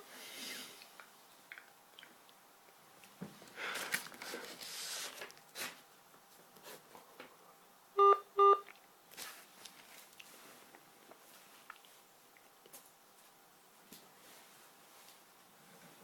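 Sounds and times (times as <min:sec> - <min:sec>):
faint rustling and handling: 0:02.9 - 0:07.2, 0:09.0 - 0:16.0
short electronic beeps: 0:08.0 - 0:08.7.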